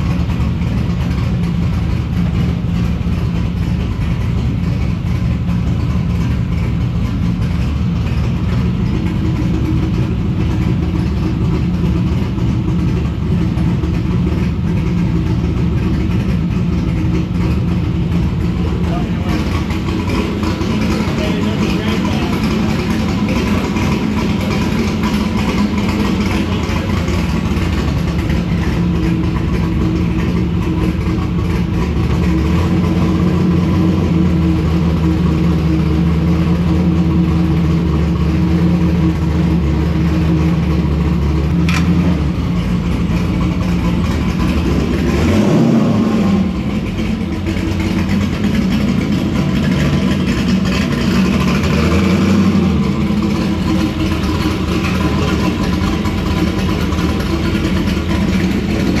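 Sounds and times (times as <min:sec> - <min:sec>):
car engine idling: 0:00.0 - 0:59.0
short click: 0:41.7 - 0:42.0.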